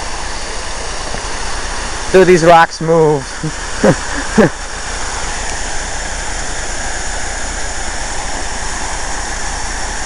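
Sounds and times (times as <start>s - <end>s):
rushing of falling water: 0.0s - 10.0s.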